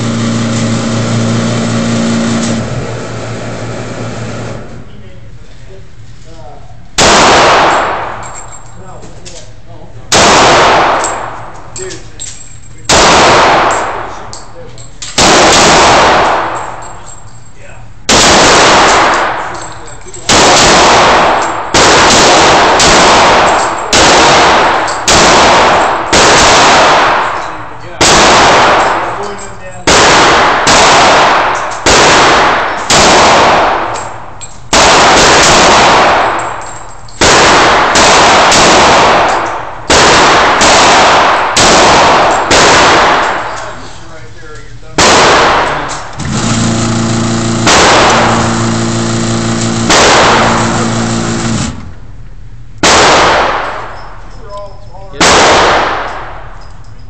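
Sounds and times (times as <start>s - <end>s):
steady low hum: 0.0s - 57.0s
pistol shots echoing: 7.0s - 8.4s, 10.1s - 11.8s, 12.9s - 14.4s, 15.1s - 16.9s, 18.1s - 43.8s, 45.0s - 51.7s, 52.8s - 54.2s, 55.1s - 56.6s.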